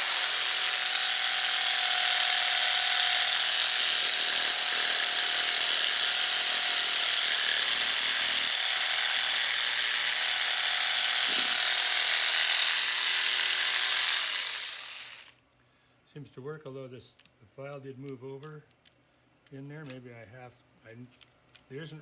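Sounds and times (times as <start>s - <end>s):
rasp filing back and forth: 0.0s - 15.3s
rotary tool whining: 0.0s - 15.3s.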